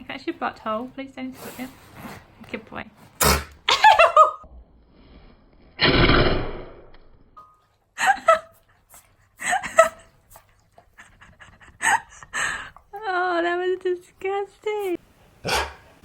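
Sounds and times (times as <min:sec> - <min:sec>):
dog burping: 0:15.4 - 0:16.0
dog short vocal sounds: 0:15.4 - 0:16.0.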